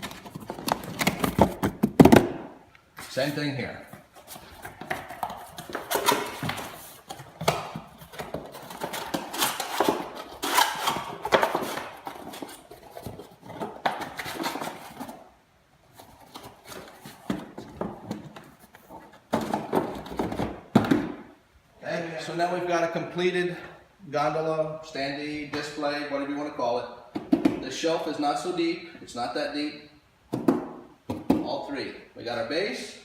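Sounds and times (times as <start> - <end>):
cardboard scraping and rustling: 0.0 - 2.2, 3.9 - 20.6.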